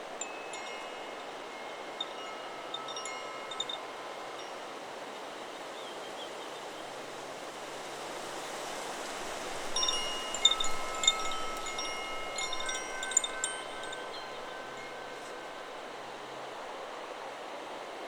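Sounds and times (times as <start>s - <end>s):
wind chime ringing: 0.0s - 4.8s, 9.6s - 16.1s
wind hiss: 0.0s - 18.0s.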